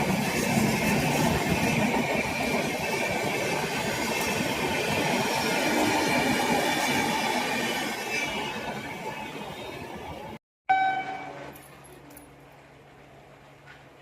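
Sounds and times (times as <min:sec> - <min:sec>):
train wheels rattling on rails: 0:00.0 - 0:09.8.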